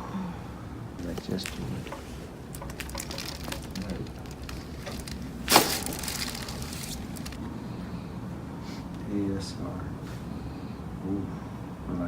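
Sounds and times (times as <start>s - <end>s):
handling sounds: 1.0s - 7.4s.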